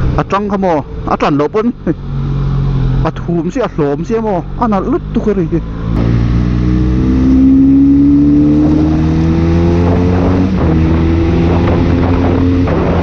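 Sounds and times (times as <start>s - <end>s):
motorcycle engine accelerating: 4.4s - 13.0s.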